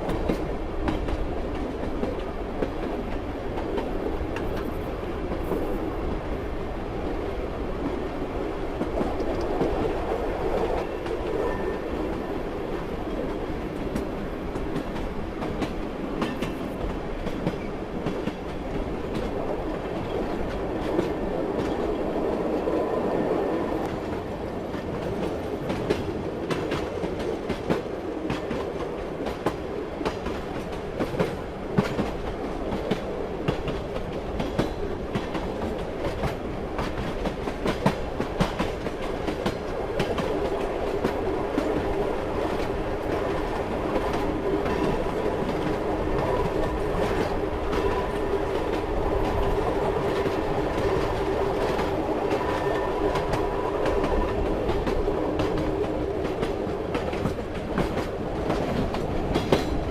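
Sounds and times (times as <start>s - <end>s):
train rumble: 0.0s - 59.9s
wheels clacking over rail joints: 24.0s - 59.9s.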